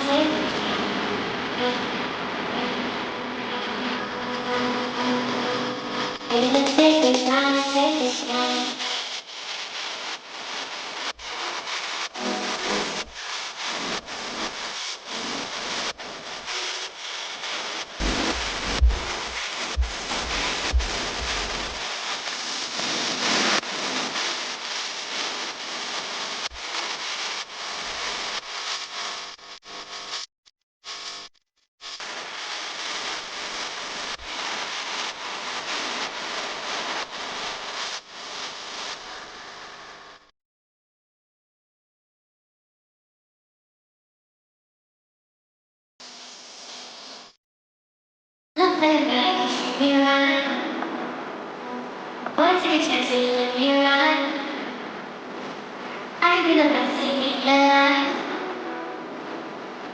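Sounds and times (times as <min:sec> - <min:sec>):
instrumental pop music: 0:06.3 - 0:08.0
steady rushing hiss: 0:18.0 - 0:21.9.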